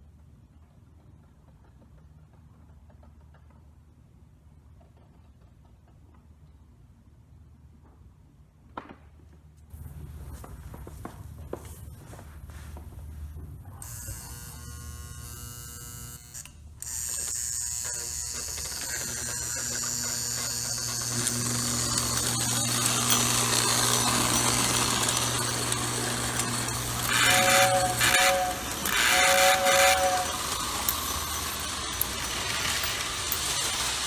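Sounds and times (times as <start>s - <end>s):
toy train motor whirring: 13.8s - 34.0s
toy train whistle blasts: 25.1s - 33.1s.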